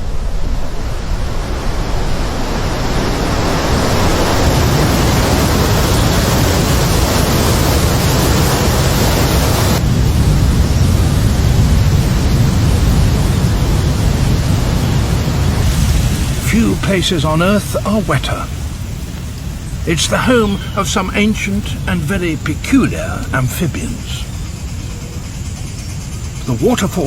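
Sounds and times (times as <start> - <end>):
water rushing: 13.4 - 24.2.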